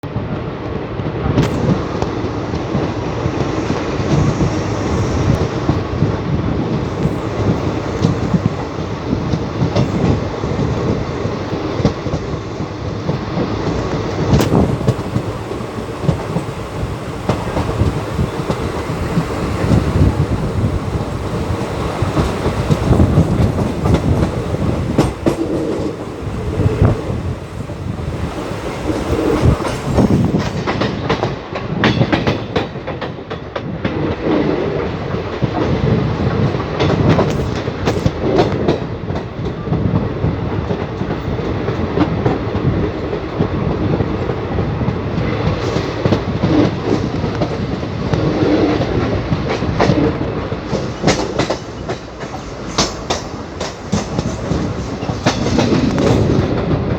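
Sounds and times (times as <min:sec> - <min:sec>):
train rumbling on track: 0:00.0 - 0:56.9
wheels clacking over rail joints: 0:01.3 - 0:56.9.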